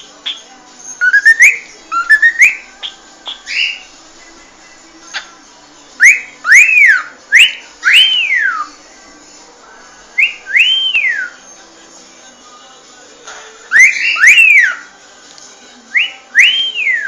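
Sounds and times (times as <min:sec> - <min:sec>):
cockatiel whistling: 0:00.2 - 0:03.9, 0:06.0 - 0:08.7, 0:10.2 - 0:11.4, 0:13.7 - 0:14.9.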